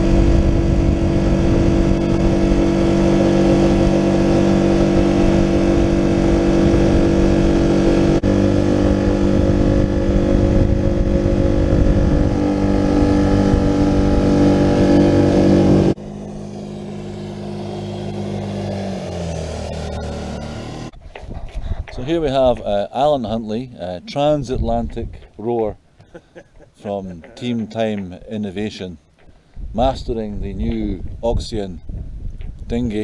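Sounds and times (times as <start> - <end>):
outboard motor running: 0.0 - 21.0.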